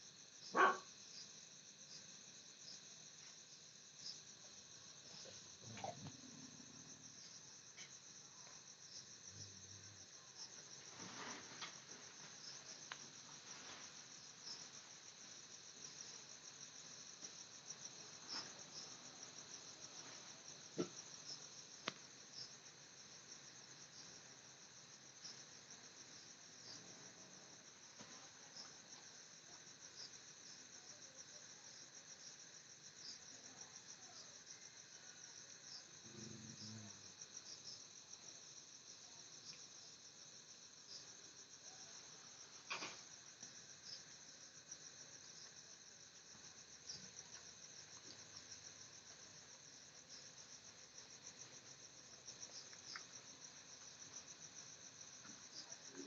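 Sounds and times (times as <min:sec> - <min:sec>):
insects chirping: 0:00.0 - 0:56.0.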